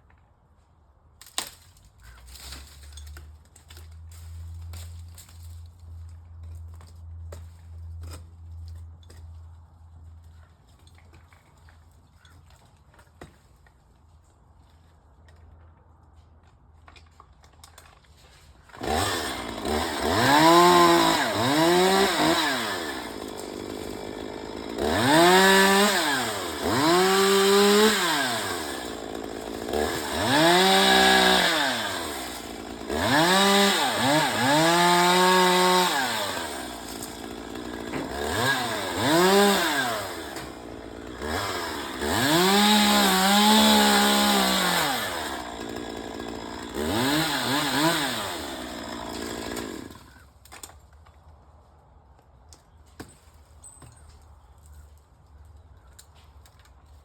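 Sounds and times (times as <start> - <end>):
chainsaw revving and idling: 18.7 - 50.3.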